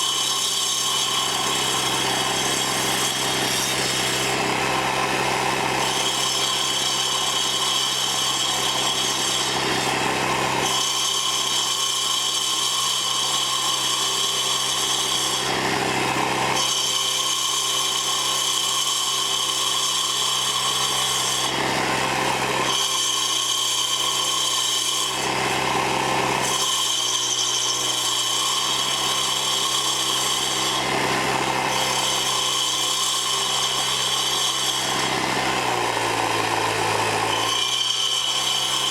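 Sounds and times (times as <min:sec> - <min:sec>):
saw blades grinding into wood: 0:00.0 - 0:38.9
small engine running hard: 0:00.0 - 0:38.9.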